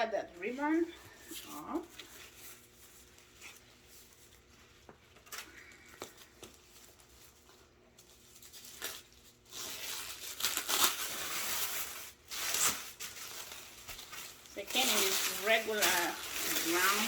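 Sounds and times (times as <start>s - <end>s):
packaging tearing and crinkling: 8.0s - 17.0s.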